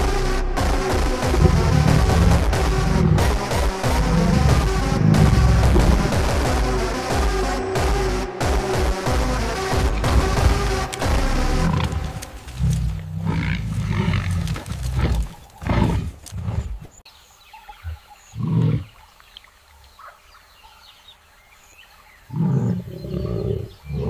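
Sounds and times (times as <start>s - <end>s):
animals roaring and growling: 1.2s - 6.6s, 10.0s - 17.0s, 18.3s - 19.0s, 22.3s - 24.0s.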